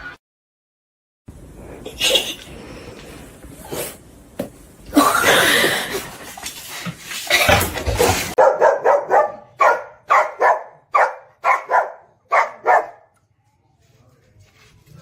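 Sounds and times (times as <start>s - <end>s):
dog barking: 8.4s - 13.1s.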